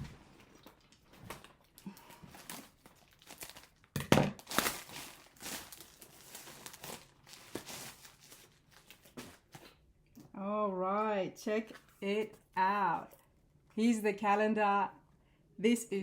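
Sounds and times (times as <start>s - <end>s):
package being torn open: 0.7s - 9.6s.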